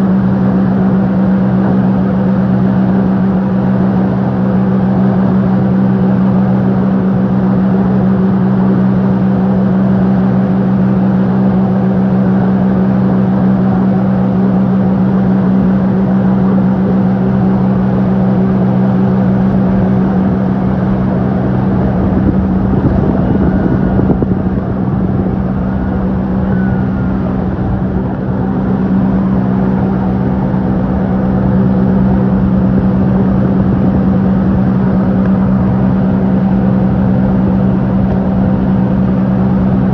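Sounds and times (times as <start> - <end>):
motorboat engine running: 0.0 - 39.9
rushing wind and water: 0.0 - 39.9.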